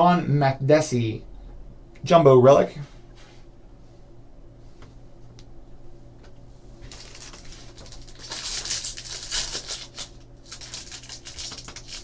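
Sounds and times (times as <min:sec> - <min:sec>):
foil wrapper crinkling: 0:06.9 - 0:12.0.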